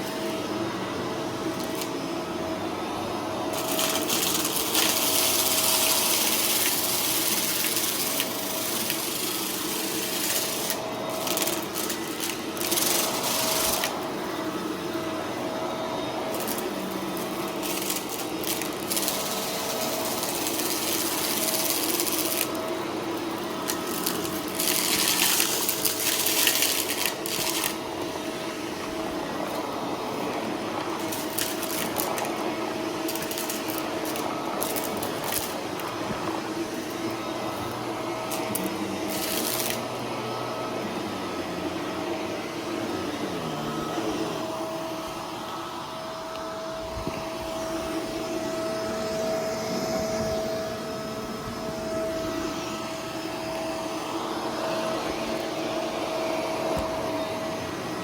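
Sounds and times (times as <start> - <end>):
vacuum cleaner running: 0.0 - 58.0
confetti rattling up vacuum nozzle: 23.6 - 27.8, 31.0 - 32.4, 33.0 - 35.9.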